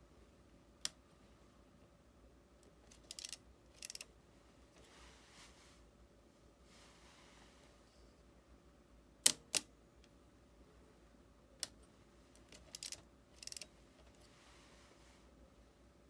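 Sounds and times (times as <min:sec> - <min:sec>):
light mechanical clicks and rattle: 0:02.6 - 0:04.1, 0:11.6 - 0:14.4.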